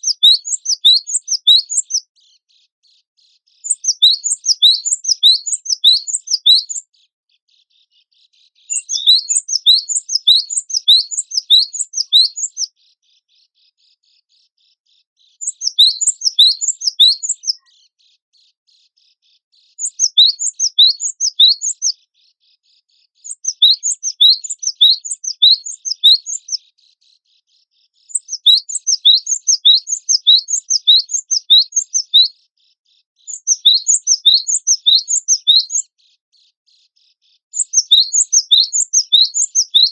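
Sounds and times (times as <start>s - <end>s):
bird chirping rapidly: 0.0s - 2.1s, 3.6s - 6.9s, 8.5s - 12.8s, 15.4s - 17.7s, 19.7s - 22.0s, 23.2s - 26.7s, 28.0s - 32.4s, 33.2s - 35.9s, 37.5s - 39.9s.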